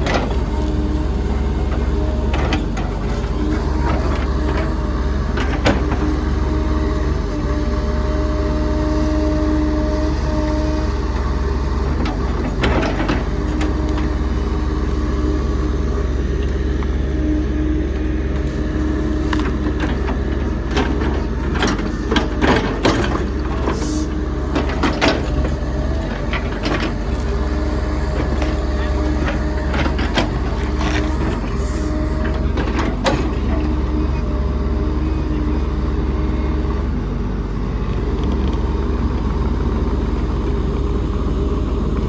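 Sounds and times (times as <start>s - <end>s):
diesel engine running: 0.0s - 42.0s
hydraulic whine: 0.0s - 42.0s
metal clanks and knocks: 19.3s - 31.4s.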